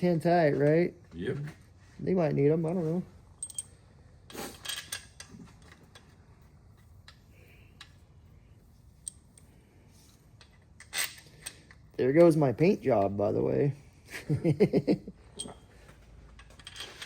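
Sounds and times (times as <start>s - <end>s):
metallic clinks of bolts: 3.4s - 3.8s, 16.4s - 17.0s.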